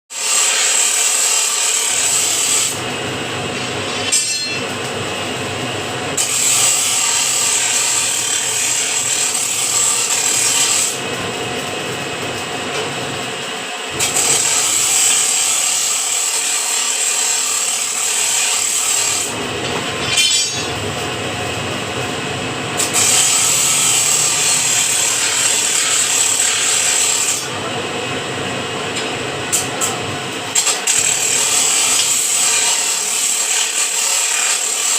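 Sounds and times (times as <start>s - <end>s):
sharp metal clank: 3.6s - 4.8s, 19.6s - 20.9s.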